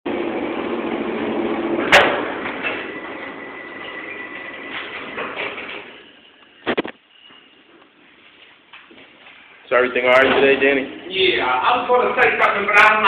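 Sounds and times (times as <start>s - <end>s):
elevator car noise: 0.1s - 7.8s
elevator doors sliding: 0.2s - 6.6s.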